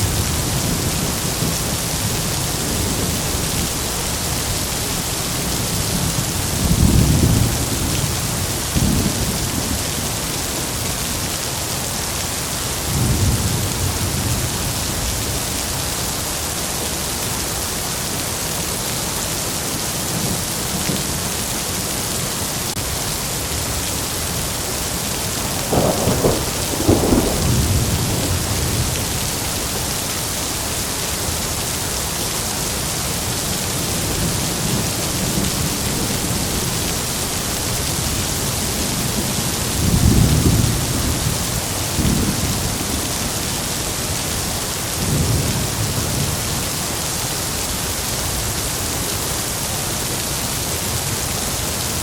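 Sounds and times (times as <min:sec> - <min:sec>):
heavy rain: 0:00.0 - 0:52.0
thunder rolling: 0:25.3 - 0:29.7
sharp thunder cracks: 0:25.4 - 0:29.2.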